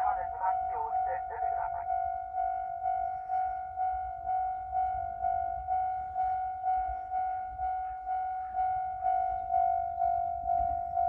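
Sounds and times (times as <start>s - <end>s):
level-crossing warning bell: 0.0s - 11.0s.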